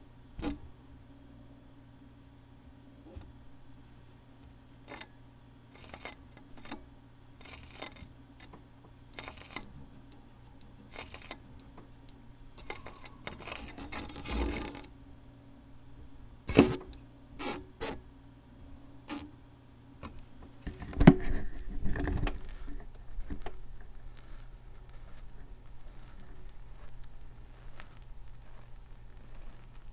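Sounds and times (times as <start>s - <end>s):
low hum: 0.0s - 29.9s
needle scratching: 5.7s - 6.8s, 7.4s - 9.7s, 10.9s - 11.4s, 12.6s - 14.9s, 23.9s - 29.9s
vinyl record crackle: 9.2s - 14.9s, 20.7s - 29.9s.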